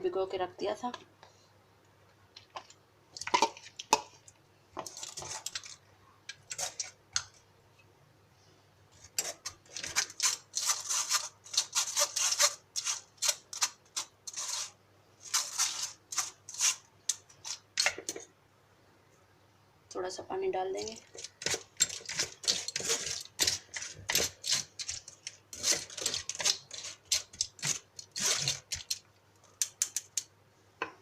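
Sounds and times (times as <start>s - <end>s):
spoon scraping against a bowl: 20.8s - 29.0s.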